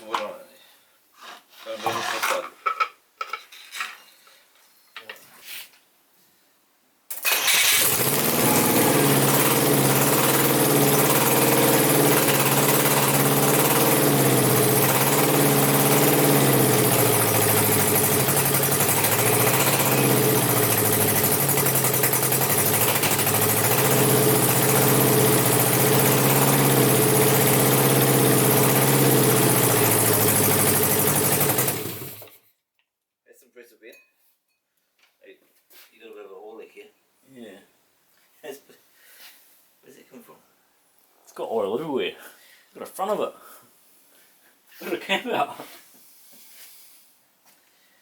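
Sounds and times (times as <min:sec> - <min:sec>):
engine running at fast idle: 0:07.3 - 0:32.3.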